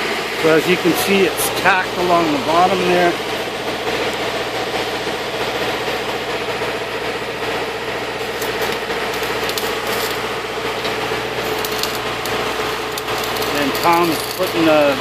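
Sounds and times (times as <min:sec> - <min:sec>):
steady welder hum: 0:00.0 - 0:15.0
welding crackle and pops: 0:03.7 - 0:15.0.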